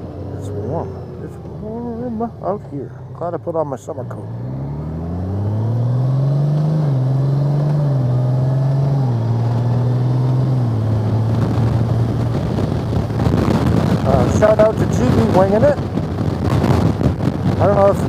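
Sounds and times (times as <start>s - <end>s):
motorcycle engine shifting gears: 0.0s - 17.6s
wind rush: 4.3s - 18.0s.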